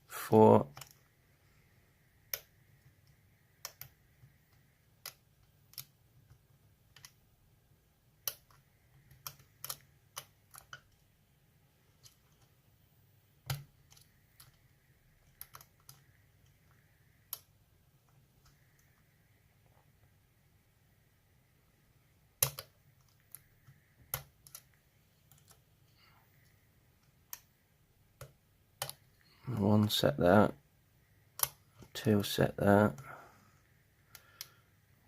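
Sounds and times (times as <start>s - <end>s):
lock pick clicking on lock pins: 3.1s - 5.9s, 8.2s - 10.9s, 15.2s - 16.6s, 22.4s - 25.6s, 31.4s - 31.9s.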